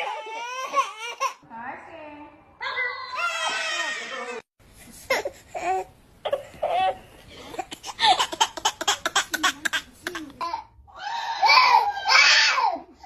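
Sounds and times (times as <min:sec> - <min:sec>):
baby laughing: 0:06.3 - 0:10.5.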